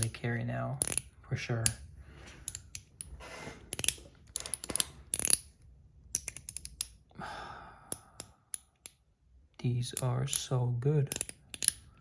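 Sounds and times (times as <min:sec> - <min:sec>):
sharp metallic clicks: 0:00.0 - 0:01.8, 0:02.4 - 0:07.0, 0:09.8 - 0:12.0.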